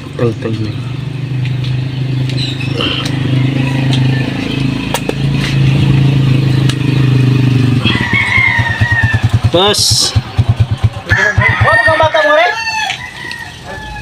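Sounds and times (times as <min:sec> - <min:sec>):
sharp metallic clicks: 0:06.6 - 0:07.0
small engine idling: 0:06.6 - 0:12.3.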